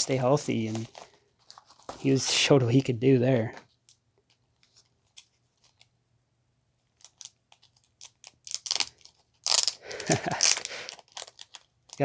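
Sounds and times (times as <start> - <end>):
packaging crinkling and rustling: 0.0 - 2.4, 6.9 - 12.0.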